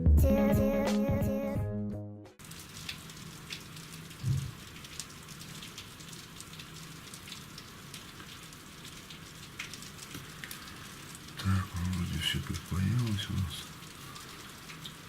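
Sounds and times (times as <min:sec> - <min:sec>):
low thump: 0:04.2 - 0:04.6.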